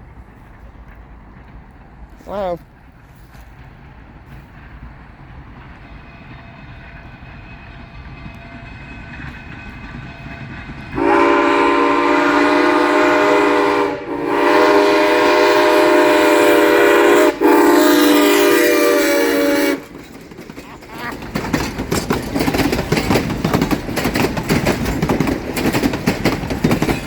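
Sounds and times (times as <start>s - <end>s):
train rumble: 0.0s - 27.0s
steam whistle chord: 11.0s - 19.8s.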